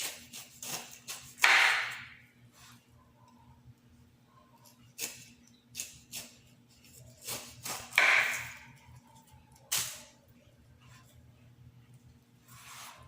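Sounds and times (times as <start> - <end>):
knife slicing pineapple rind: 0.0 - 2.2, 4.6 - 8.8.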